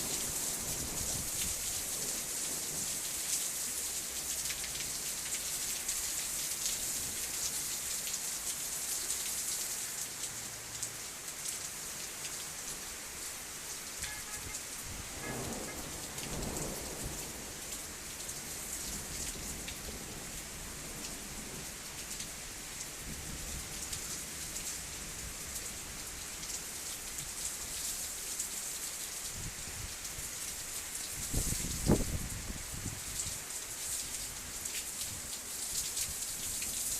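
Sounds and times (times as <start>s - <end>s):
heavy rain and sleet: 0.0s - 36.9s.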